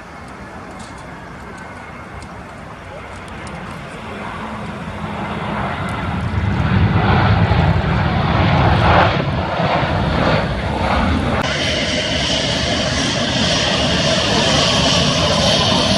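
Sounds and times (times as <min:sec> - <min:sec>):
jet airliner passing close: 0:00.0 - 0:15.9
wind rumble on microphone: 0:03.2 - 0:15.9.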